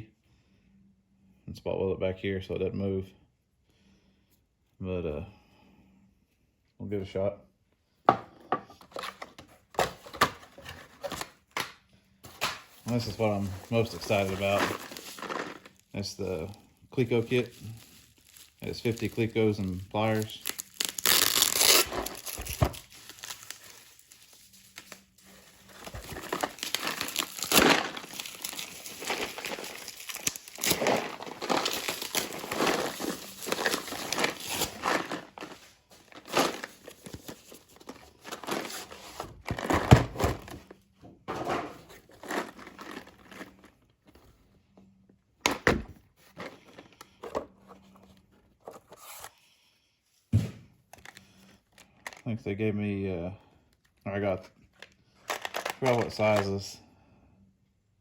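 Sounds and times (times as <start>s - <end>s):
packaging crinkling and tearing: 12.3s - 40.7s, 41.8s - 43.9s, 54.7s - 56.6s.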